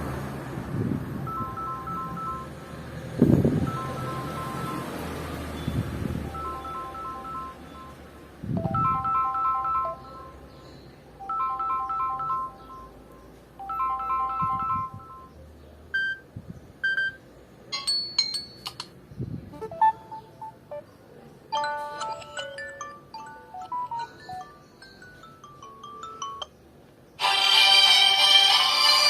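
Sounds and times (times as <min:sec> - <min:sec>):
phone ringtone melody: 0:01.2 - 0:02.6, 0:03.6 - 0:10.6, 0:11.2 - 0:15.3, 0:16.8 - 0:18.8, 0:19.6 - 0:20.9, 0:21.6 - 0:26.6, 0:27.2 - 0:29.0
notification chimes: 0:01.3 - 0:02.5, 0:03.6 - 0:08.0, 0:08.6 - 0:10.4, 0:13.6 - 0:15.3, 0:21.6 - 0:24.7.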